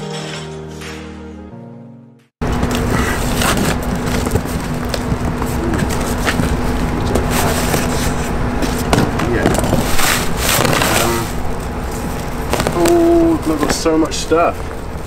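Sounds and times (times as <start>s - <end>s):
steady low hum: 2.4s - 15.0s
cardboard packaging torn open: 9.6s - 11.4s, 12.0s - 13.2s.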